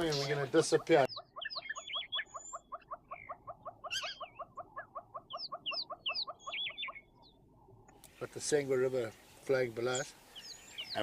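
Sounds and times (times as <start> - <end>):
bird chirps and whistles: 1.1 - 4.5, 5.3 - 7.1.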